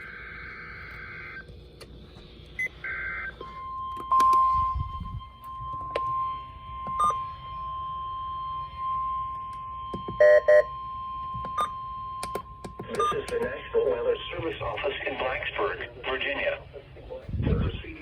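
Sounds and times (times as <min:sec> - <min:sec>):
steady warning alarm tone: 0:00.0 - 0:17.3
radio static clicks: 0:12.8 - 0:13.7.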